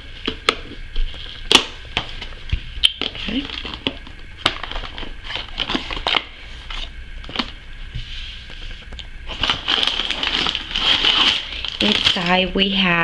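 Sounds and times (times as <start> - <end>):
plastic bags crinkling: 3.0 - 7.6, 9.3 - 13.0.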